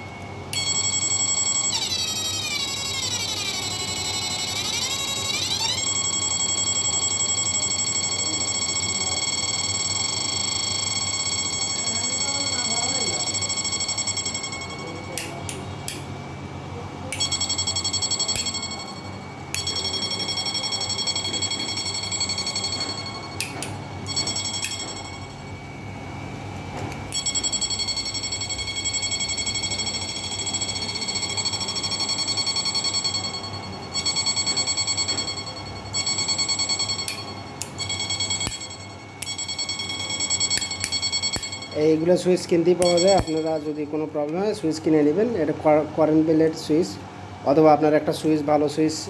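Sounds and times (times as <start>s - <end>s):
high-pitched electronic whine: 0.0s - 16.0s
sharp switch clicks: 15.2s - 16.1s, 23.4s - 23.8s.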